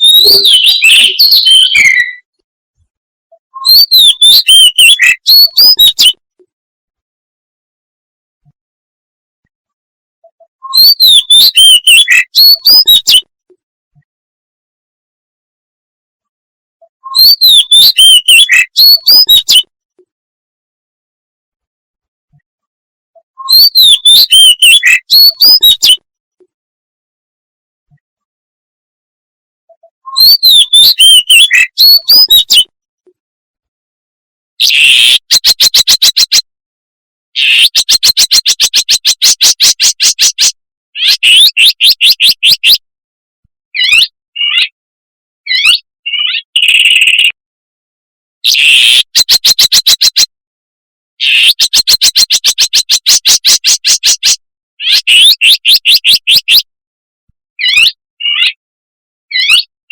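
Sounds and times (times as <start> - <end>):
bird harsh grating call: 3.7 - 5.8, 23.5 - 25.9, 30.2 - 32.6
bird rapid chattering: 3.7 - 6.1, 10.8 - 13.2, 17.2 - 19.6, 23.5 - 25.9, 30.2 - 32.6.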